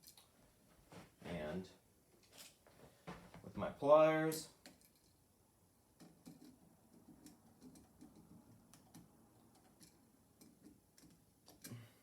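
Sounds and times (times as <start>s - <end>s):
pliers clicking on wire: 7.2s - 11.8s.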